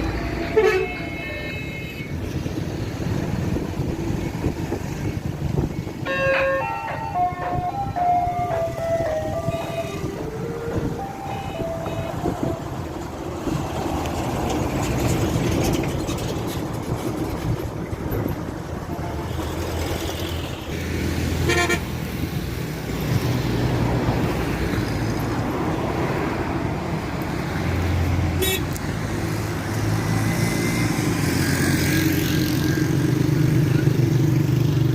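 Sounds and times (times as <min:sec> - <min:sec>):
road traffic engines: 0:00.0 - 0:34.9
vehicle horn toots: 0:00.4 - 0:02.2, 0:09.4 - 0:10.1, 0:11.2 - 0:12.6, 0:21.4 - 0:21.9, 0:28.4 - 0:28.7.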